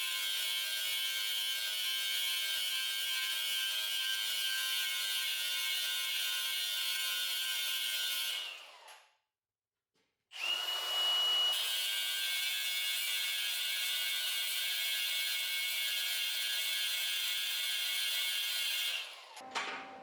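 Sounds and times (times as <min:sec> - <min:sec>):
power tool whining: 0:10.4 - 0:12.0, 0:18.1 - 0:20.0.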